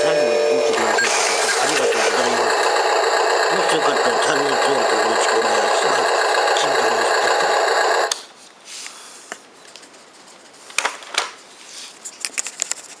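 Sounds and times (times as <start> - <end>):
diesel engine running: 0.0 - 8.1.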